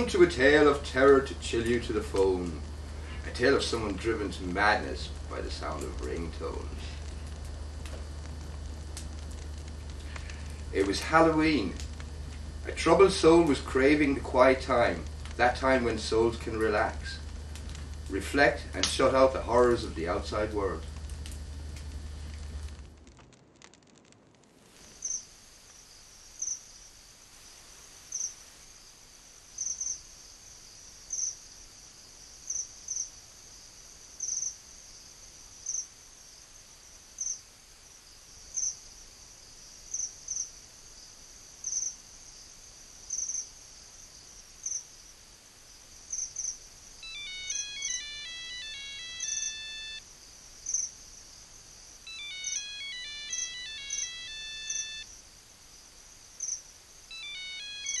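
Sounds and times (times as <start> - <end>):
cricket chirps: 0.0 - 22.7, 24.6 - 58.0
faint steady hiss: 0.0 - 58.0
phone ringtone melody: 47.0 - 50.0, 52.1 - 55.0, 57.1 - 58.0.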